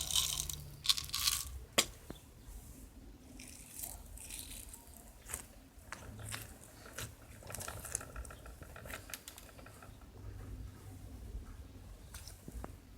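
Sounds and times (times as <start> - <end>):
slime squishing with crackles: 3.3 - 10.2.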